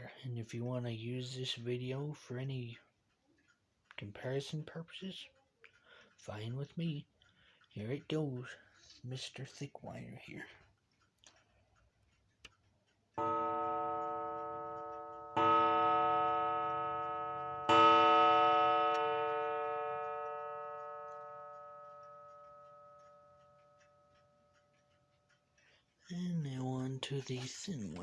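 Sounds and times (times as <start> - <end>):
wire gong ringing: 13.2 - 21.1.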